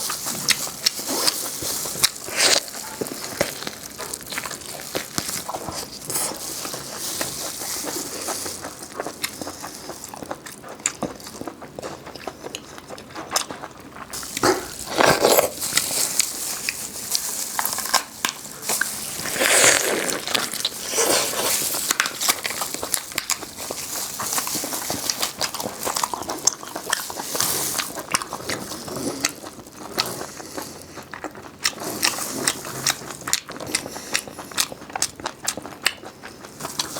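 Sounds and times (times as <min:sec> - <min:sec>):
biting and chewing: 0:00.0 - 0:36.9
loud crunching: 0:14.1 - 0:28.6.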